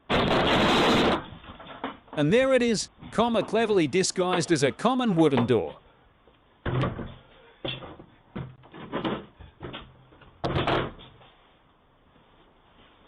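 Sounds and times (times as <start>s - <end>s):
wooden door banging: 10.4s - 11.0s.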